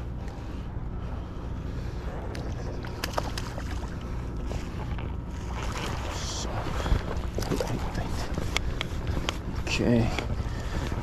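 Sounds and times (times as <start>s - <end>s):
wind buffeting microphone: 0.0s - 11.0s.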